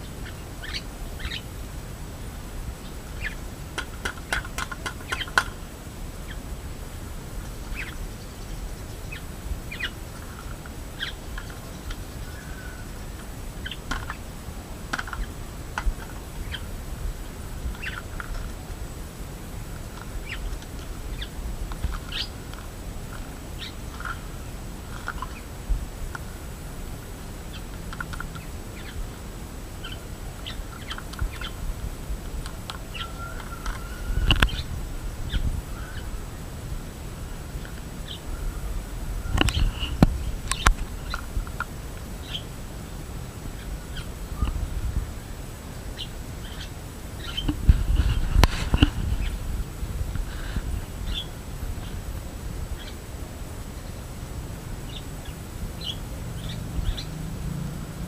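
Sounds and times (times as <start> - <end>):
high bird chirps: 0.2 - 1.5, 7.6 - 12.9.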